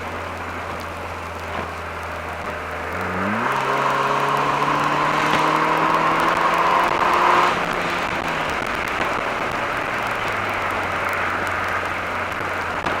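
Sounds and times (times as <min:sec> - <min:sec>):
car engine pulling: 0:00.0 - 0:13.0
road noise: 0:00.0 - 0:13.0
wind noise: 0:00.0 - 0:13.0.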